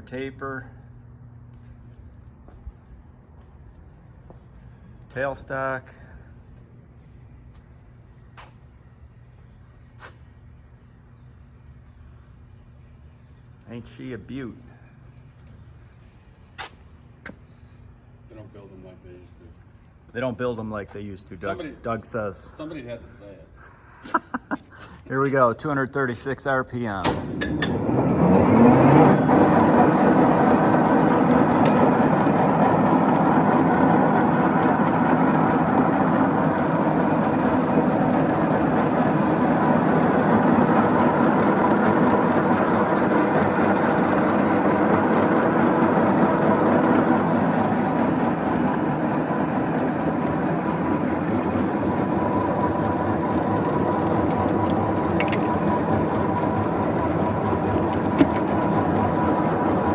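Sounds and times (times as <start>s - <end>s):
lathe mechanical hum: 25.0s - 59.9s.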